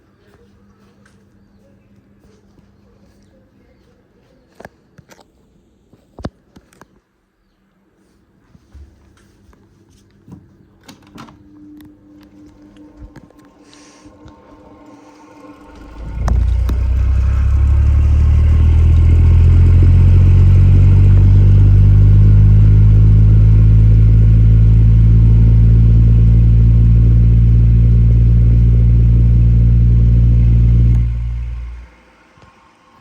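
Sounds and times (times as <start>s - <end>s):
fan motor humming: 11.1s - 33.0s.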